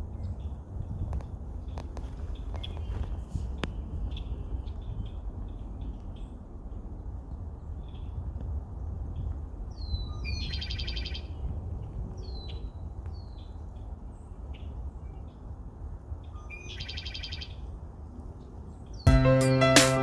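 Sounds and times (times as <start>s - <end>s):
birds singing trills: 9.7s - 11.4s, 16.3s - 17.6s
bird chip notes: 19.1s - 20.0s.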